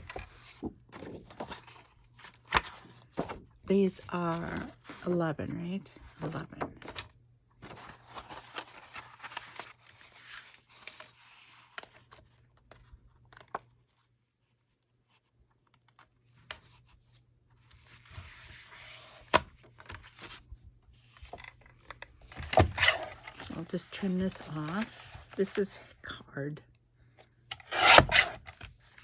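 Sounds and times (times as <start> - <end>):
paper rustling and sliding: 7.6 - 12.8, 17.7 - 20.5, 21.1 - 25.9.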